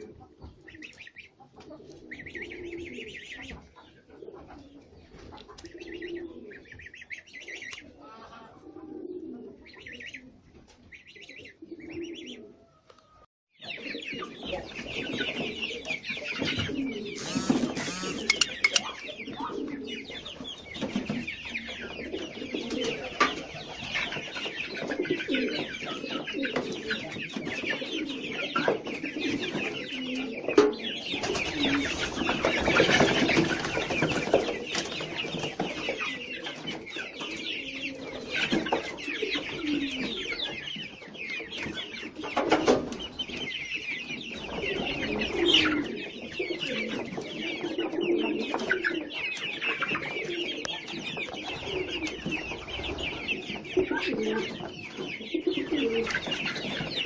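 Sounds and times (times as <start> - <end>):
birds cooing and clucking: 0.0 - 57.0
short clicks and taps: 17.4 - 18.8.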